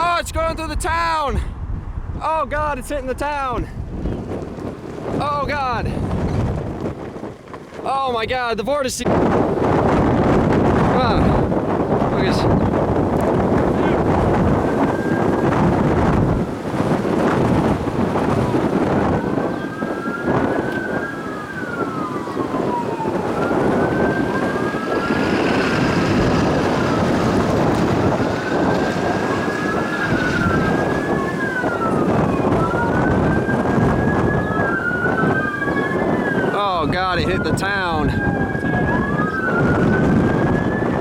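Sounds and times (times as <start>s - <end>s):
wind noise on microphone: 0.0s - 41.0s
siren wailing: 10.4s - 41.0s.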